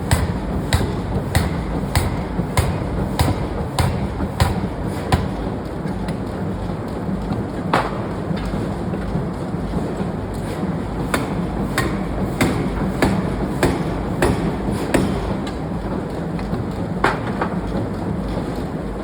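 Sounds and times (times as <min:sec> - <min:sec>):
forging hammer striking steel: 0:00.0 - 0:05.6, 0:11.0 - 0:15.6
machinery hum: 0:00.0 - 0:19.0.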